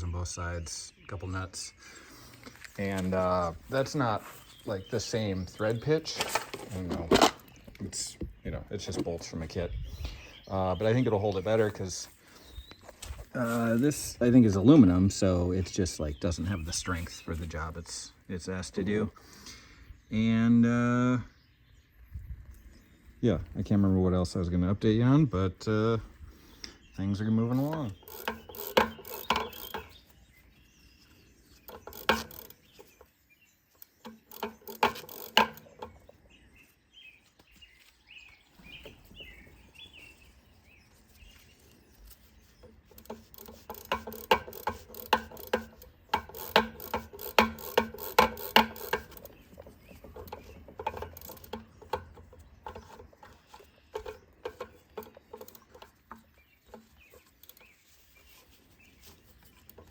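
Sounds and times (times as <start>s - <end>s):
tools and bike parts clattering: 5.0s - 8.0s, 27.4s - 30.2s, 31.5s - 36.2s, 42.1s - 59.9s.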